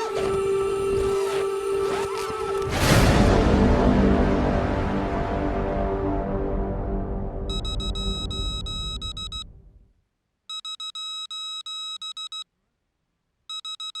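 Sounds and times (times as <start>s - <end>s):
song playing: 2.3s - 9.5s
electronic ringtone trilling: 7.5s - 9.5s.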